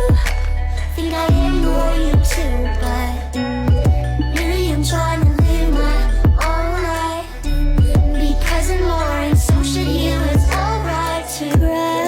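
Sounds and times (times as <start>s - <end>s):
deep kick drums: 0.0s - 0.4s, 1.3s - 2.4s, 3.7s - 4.2s, 5.2s - 6.6s, 7.8s - 8.5s, 9.3s - 9.8s, 10.4s - 10.7s, 11.6s - 11.8s
bass line: 0.0s - 11.8s
pop music: 0.0s - 12.0s
sustained melody: 0.0s - 12.0s.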